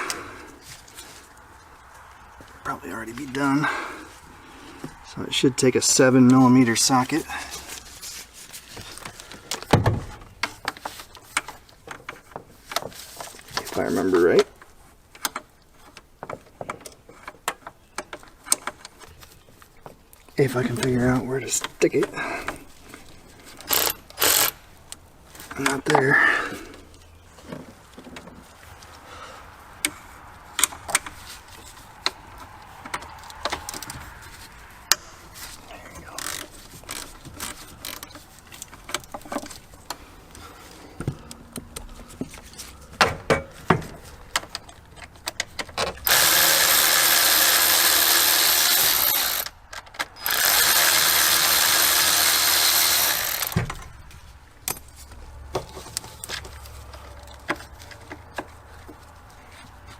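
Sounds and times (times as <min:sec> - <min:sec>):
socket wrench ratcheting: 0:23.6 - 0:24.6, 0:46.1 - 0:53.6.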